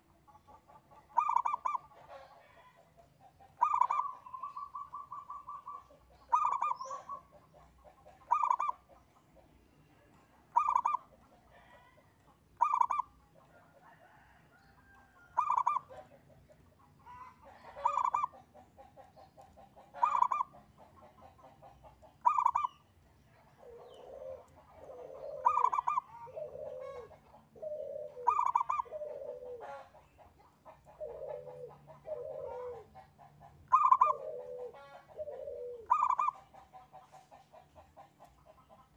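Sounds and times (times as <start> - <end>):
dove singing ringing coo: 0.0 - 2.8, 3.4 - 9.4, 10.0 - 18.6, 19.2 - 37.2
soft low cooing: 23.6 - 29.6.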